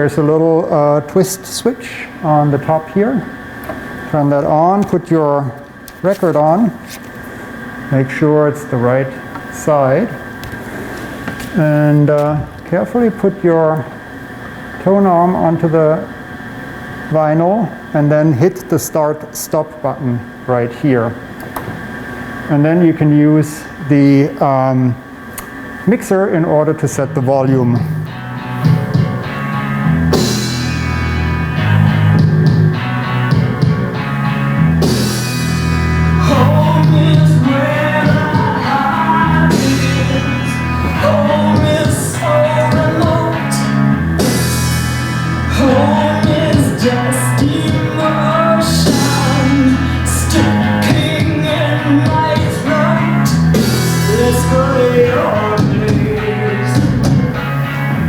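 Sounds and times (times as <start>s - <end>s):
rock song from vinyl record: 27.9s - 58.0s.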